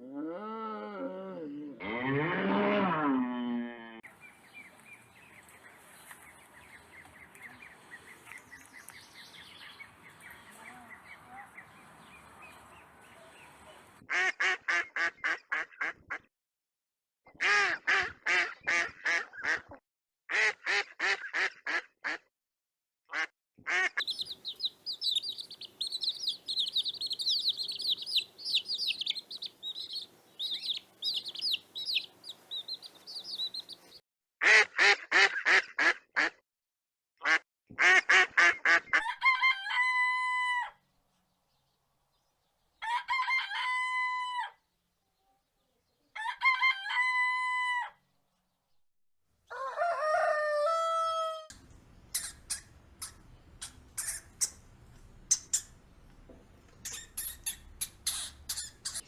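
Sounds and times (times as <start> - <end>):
small birds chirping: 4.0 - 14.0, 23.9 - 34.0, 51.6 - 59.0
ducks quacking: 17.4 - 22.2, 23.1 - 36.4, 37.2 - 39.1, 52.1 - 55.8.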